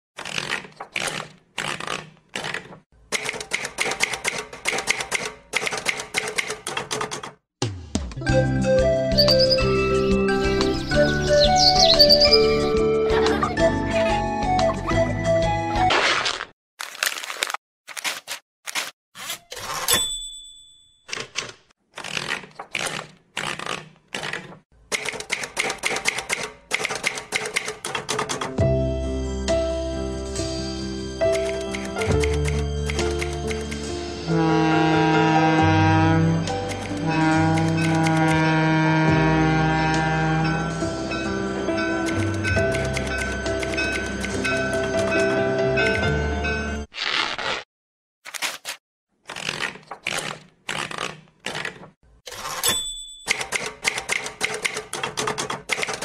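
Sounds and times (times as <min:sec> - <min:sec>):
typewriter key strikes: 0:37.6 - 0:38.4, 0:50.1 - 0:56.0
sharp mechanical clicks: 0:53.3 - 0:56.0.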